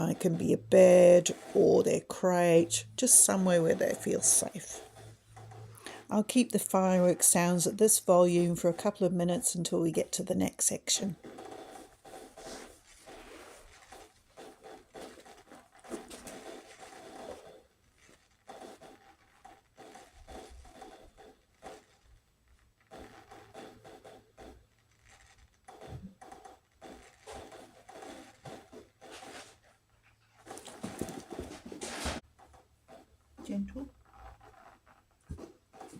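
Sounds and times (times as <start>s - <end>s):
fireworks crackles and pops: 5.8s - 31.5s.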